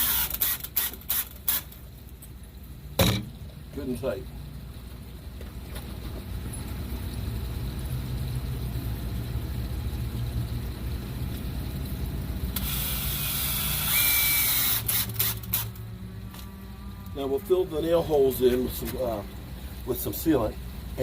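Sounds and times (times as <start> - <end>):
vehicle engine rumbling: 15.2 - 21.0.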